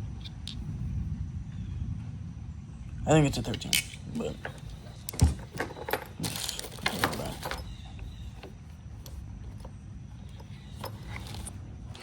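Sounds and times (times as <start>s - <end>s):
tools rattling in toolbox: 3.6s - 12.0s.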